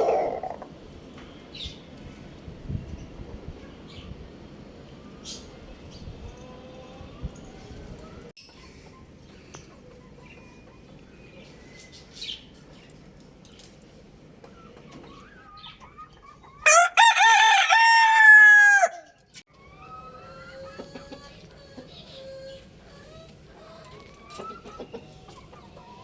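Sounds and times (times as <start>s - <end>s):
rooster crowing: 16.6s - 19.2s.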